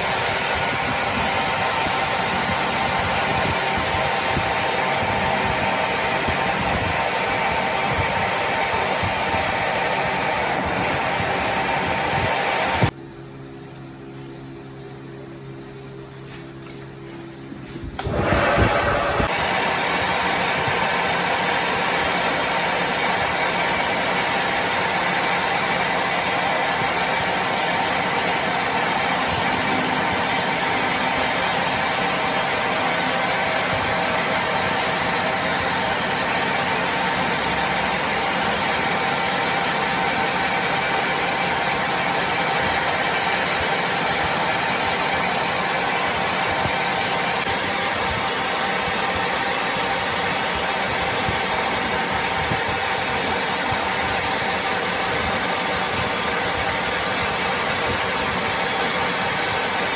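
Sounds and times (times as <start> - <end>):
machine humming steadily: 0.0 - 59.9.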